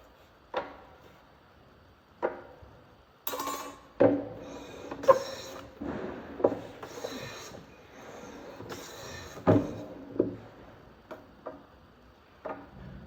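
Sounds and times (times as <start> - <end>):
tool scraping wood: 4.4 - 10.4.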